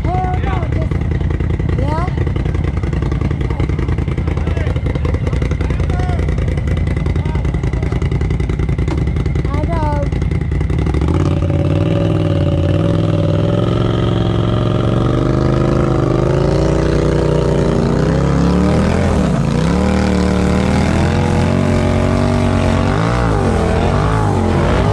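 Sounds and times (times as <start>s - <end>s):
off-road vehicle engine revving: 0.0s - 24.9s.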